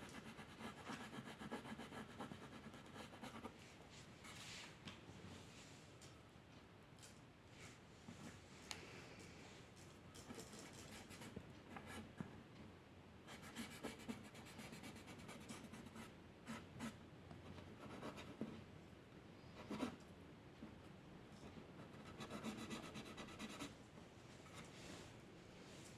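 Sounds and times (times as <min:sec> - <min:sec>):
drawing tool scratching on paper: 0:00.1 - 0:03.5.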